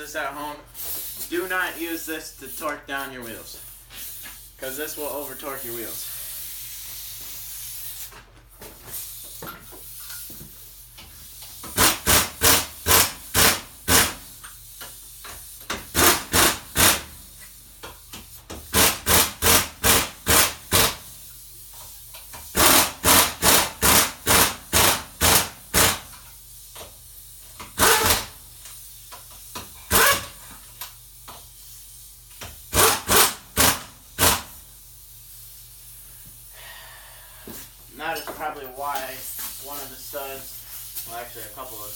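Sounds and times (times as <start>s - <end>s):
impact wrench bursts: 11.3s - 31.7s, 32.3s - 36.6s.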